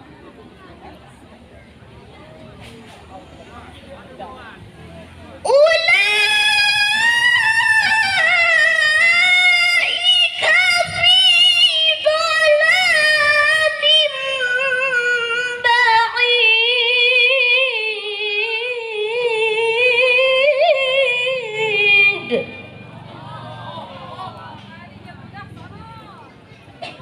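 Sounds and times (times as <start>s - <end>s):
woman reciting melodically: 5.4s - 23.1s.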